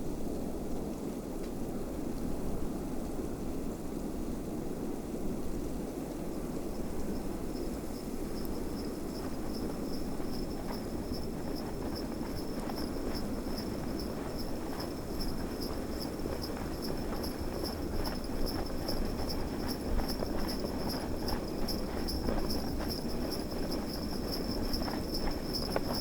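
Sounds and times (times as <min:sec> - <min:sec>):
low rush of wind: 0:00.0 - 0:26.0
horse hooves clopping: 0:06.7 - 0:26.0
sleigh bells jingling: 0:08.3 - 0:26.0.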